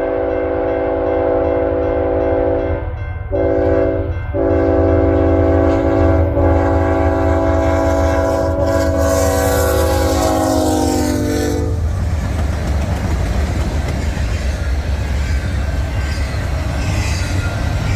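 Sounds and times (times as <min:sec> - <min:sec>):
locomotive air horn: 0:00.0 - 0:02.7, 0:03.3 - 0:12.0
passing train rumble: 0:00.0 - 0:17.9.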